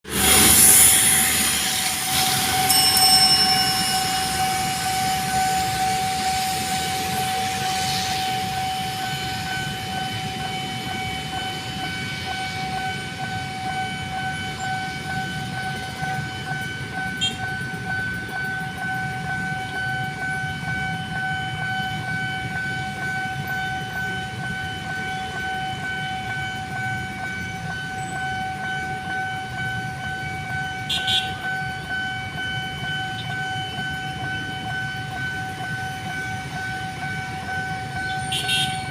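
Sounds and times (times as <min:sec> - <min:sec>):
train rumbling: 0:00.0 - 0:38.9
long train horn blast: 0:30.8 - 0:31.5, 0:38.1 - 0:38.9.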